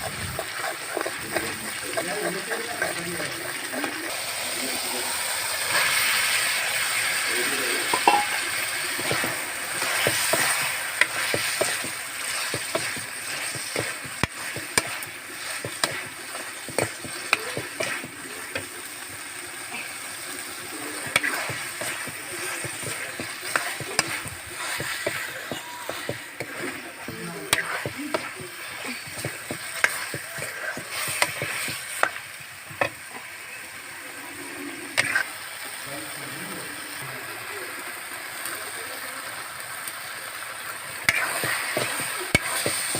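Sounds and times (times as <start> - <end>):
spatula scraping a pan: 0.0 - 4.1, 7.8 - 18.8, 19.6 - 33.1, 34.9 - 35.3, 41.1 - 42.9
chicken sizzling in a pan: 0.0 - 42.9.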